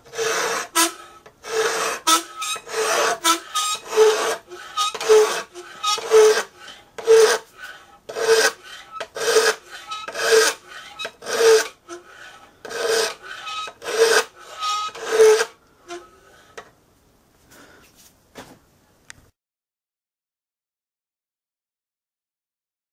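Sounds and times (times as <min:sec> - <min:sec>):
file strokes on steel blade: 0:00.0 - 0:16.6.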